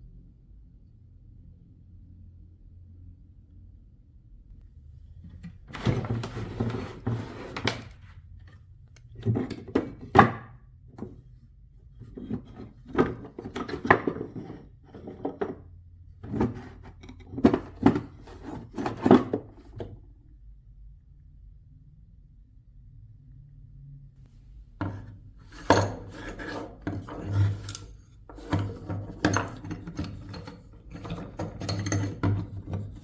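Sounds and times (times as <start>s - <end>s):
scraping and rubbing: 5.4s - 8.2s, 24.4s - 33.0s.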